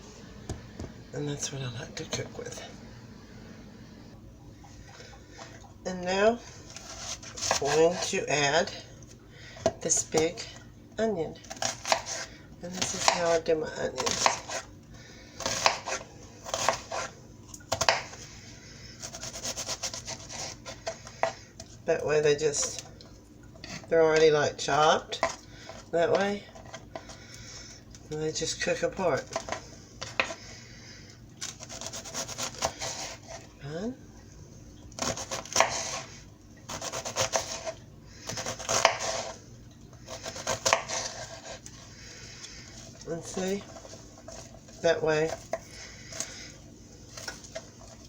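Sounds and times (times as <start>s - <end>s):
knife cutting onion on board: 11.5s - 14.7s, 15.4s - 18.2s, 19.0s - 21.4s, 31.6s - 33.4s, 35.0s - 36.1s, 36.7s - 39.4s, 40.1s - 41.7s.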